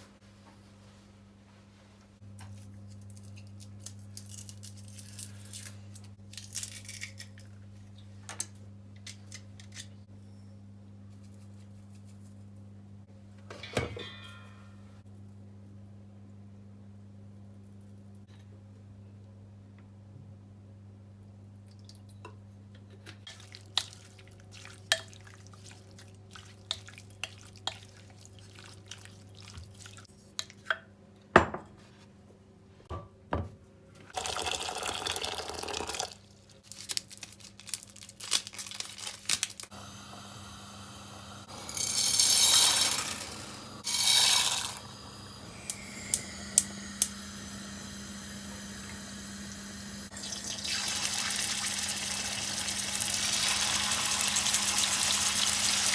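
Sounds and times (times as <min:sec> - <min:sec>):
dishes and utensils clinking: 0:13.5 - 0:15.0
tap running: 0:41.2 - 0:47.9.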